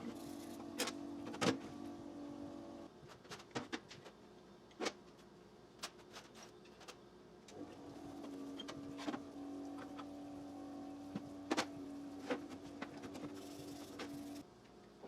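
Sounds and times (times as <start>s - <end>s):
small motor running: 0.0s - 2.9s, 7.6s - 14.4s.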